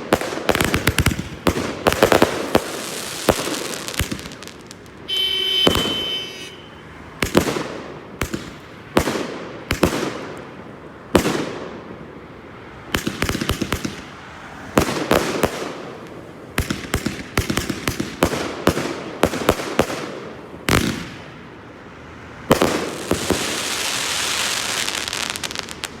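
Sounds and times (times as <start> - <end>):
firework crackling hiss: 2.0 - 5.0, 22.8 - 26.0
firework whistle: 5.0 - 6.9.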